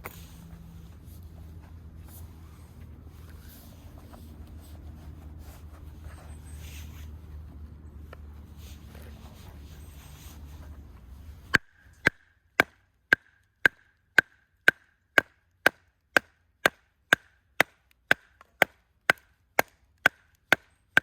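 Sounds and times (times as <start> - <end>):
axe chopping firewood: 11.5 - 21.0.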